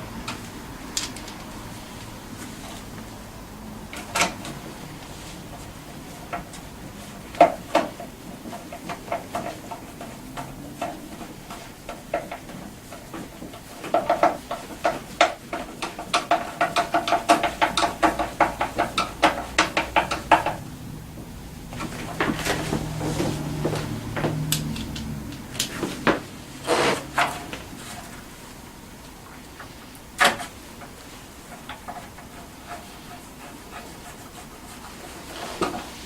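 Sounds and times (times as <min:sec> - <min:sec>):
knocks: 0:13.9 - 0:25.2.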